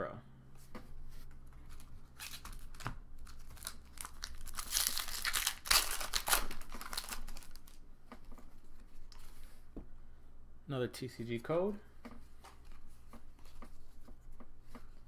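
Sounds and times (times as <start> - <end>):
foil wrapper crinkling and tearing: 1.6 - 7.8.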